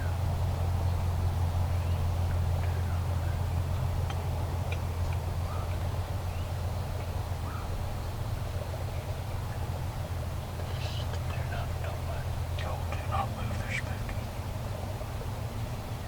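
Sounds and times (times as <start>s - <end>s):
steady low hum: 0.0s - 16.0s
turkey hens calling: 10.0s - 15.3s.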